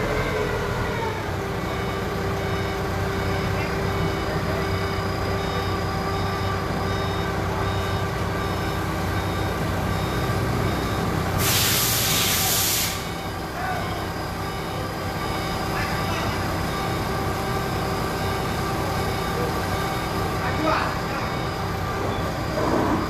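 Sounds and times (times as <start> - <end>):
heavy vehicle engine running: 0.0 - 23.0
air release hiss: 11.4 - 13.2.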